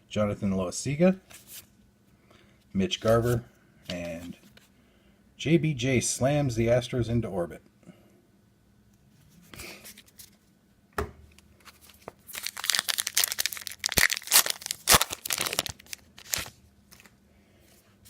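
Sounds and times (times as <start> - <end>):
wrapper tearing and crinkling: 11.7 - 16.6.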